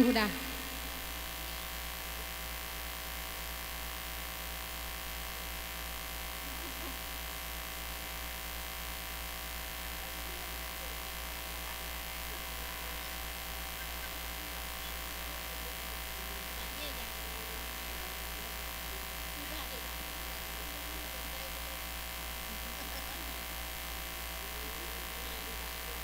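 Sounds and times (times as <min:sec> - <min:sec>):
electrical mains hum: 0:00.0 - 0:26.0
faint sound system buzz: 0:00.0 - 0:26.0.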